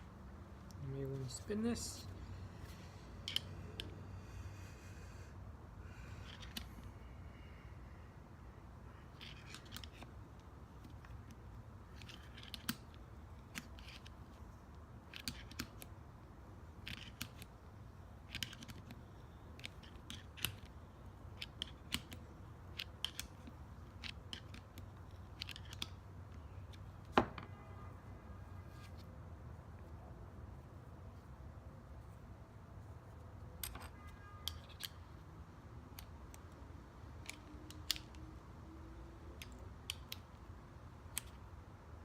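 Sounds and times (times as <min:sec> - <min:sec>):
clicks and ticks of hand work: 0:09.1 - 0:16.0, 0:16.8 - 0:17.6, 0:18.2 - 0:27.1, 0:35.8 - 0:38.4, 0:39.3 - 0:41.6.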